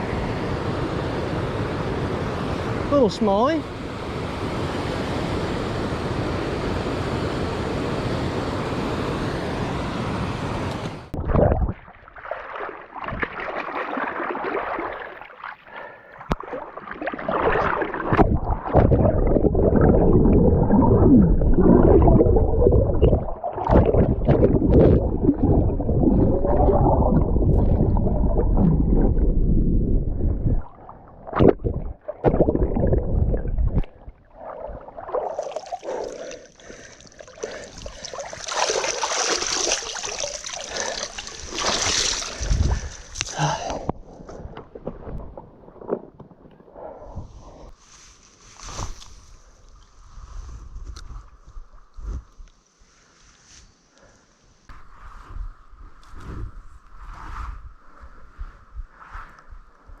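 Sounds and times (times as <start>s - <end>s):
water sloshing and gurgling: 11.0s - 47.8s
river water flowing: 34.4s - 43.9s.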